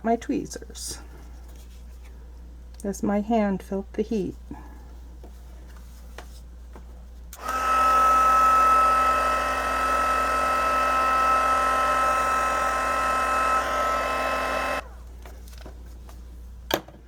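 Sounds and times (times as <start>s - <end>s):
heat gun fan whine: 7.3s - 15.2s.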